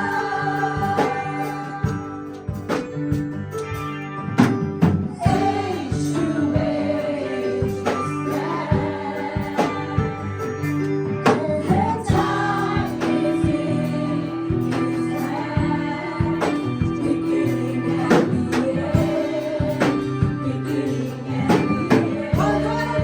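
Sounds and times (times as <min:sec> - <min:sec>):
singers singing together: 0:00.0 - 0:02.6, 0:05.1 - 0:23.0
worship band playing: 0:00.0 - 0:23.0.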